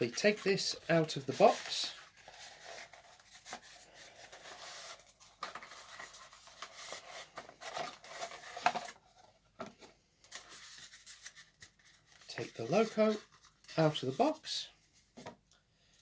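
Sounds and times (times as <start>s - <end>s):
packaging rubbing and scraping: 0.1s - 9.0s.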